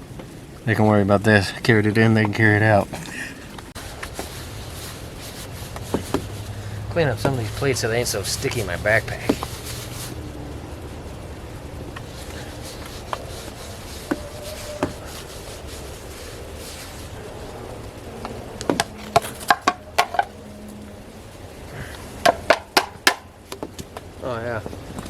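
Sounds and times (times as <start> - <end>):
dishes clinking and knocking: 18.7 - 20.4.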